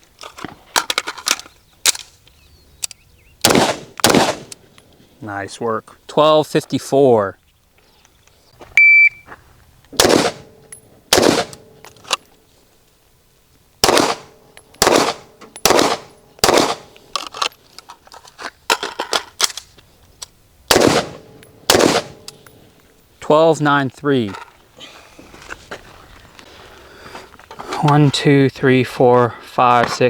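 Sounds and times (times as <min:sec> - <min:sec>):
pistol shots: 0:03.4 - 0:04.6, 0:10.0 - 0:11.7, 0:13.8 - 0:17.0, 0:20.7 - 0:22.4
rifle shots: 0:03.4 - 0:04.6, 0:10.0 - 0:11.7, 0:13.8 - 0:17.0, 0:20.7 - 0:22.3
rifle reloading metallic clicks: 0:10.0 - 0:12.4, 0:13.8 - 0:18.0, 0:18.7 - 0:22.6.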